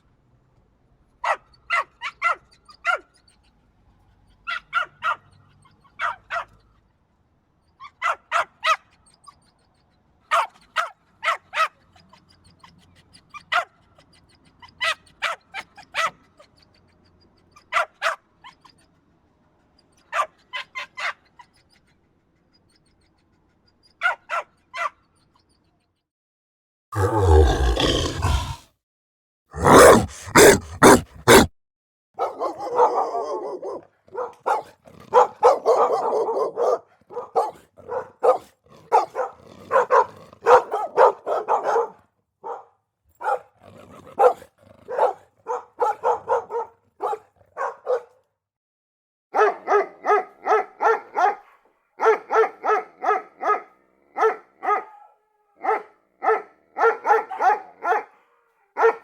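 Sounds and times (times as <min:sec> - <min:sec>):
dogs barking: 0:04.5 - 0:05.3, 0:08.0 - 0:08.9, 0:10.3 - 0:11.8, 0:14.7 - 0:16.2, 0:20.0 - 0:21.2, 0:27.0 - 0:28.6, 0:29.6 - 0:31.5, 0:32.2 - 0:48.2, 0:49.4 - 0:59.0.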